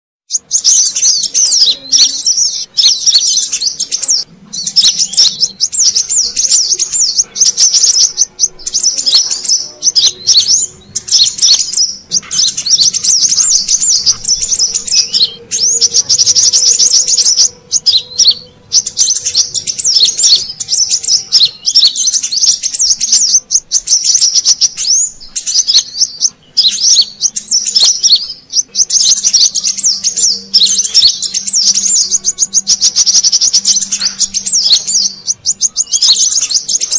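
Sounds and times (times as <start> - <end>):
bird singing high trills: 0.3 - 36.9.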